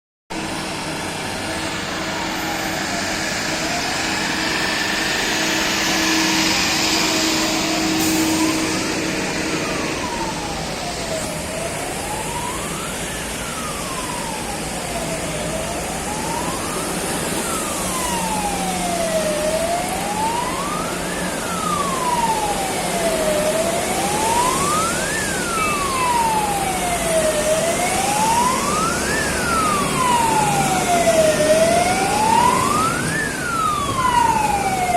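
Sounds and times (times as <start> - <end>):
emergency siren wailing: 0.3 - 34.9.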